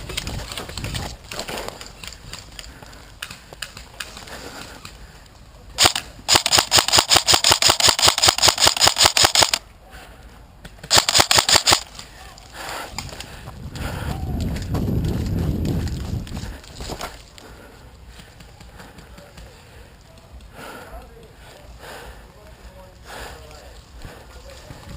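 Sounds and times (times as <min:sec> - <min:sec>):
airsoft rifle shots: 0:05.8 - 0:09.6, 0:10.8 - 0:11.9.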